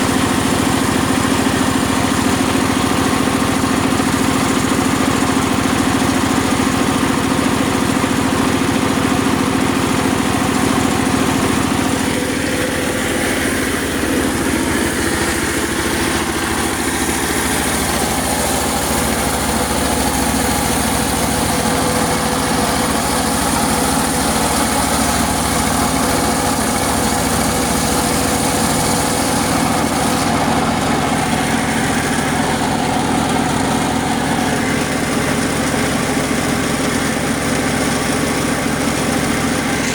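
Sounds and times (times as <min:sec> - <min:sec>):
circular saw machine droning: 0:08.9 - 0:36.6, 0:39.2 - 0:39.9.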